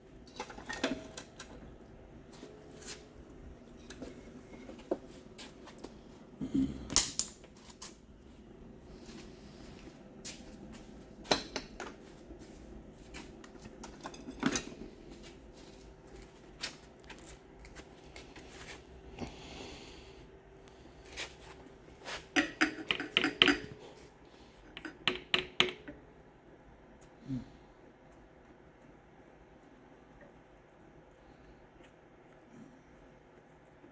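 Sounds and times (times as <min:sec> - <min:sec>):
metal parts clinking on a workbench: 0:06.9 - 0:07.5.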